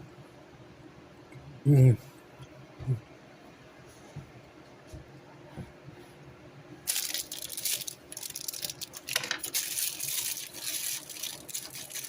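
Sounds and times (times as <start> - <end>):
cracker sleeve crinkling: 6.9 - 12.0.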